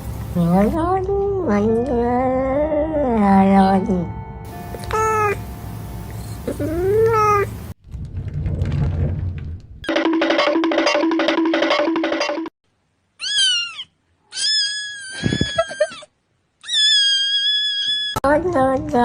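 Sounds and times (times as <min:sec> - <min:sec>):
cat meowing: 0:04.9 - 0:05.4, 0:06.5 - 0:07.5, 0:13.2 - 0:16.0, 0:16.6 - 0:18.2
looping music with repeated note: 0:09.9 - 0:12.5.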